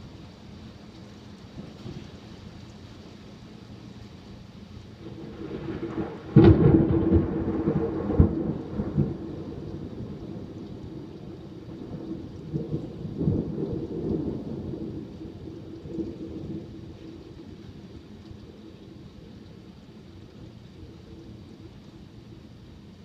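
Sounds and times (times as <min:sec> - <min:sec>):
rain hissing: 0:00.0 - 0:23.0
rolling thunder rumbles: 0:04.9 - 0:23.0
thunder clap: 0:05.0 - 0:16.7.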